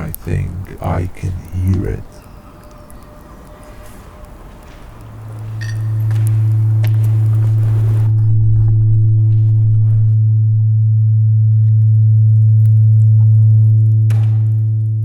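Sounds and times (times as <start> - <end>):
faint crackles: 0.0 - 10.2
low drone tone: 0.0 - 15.0.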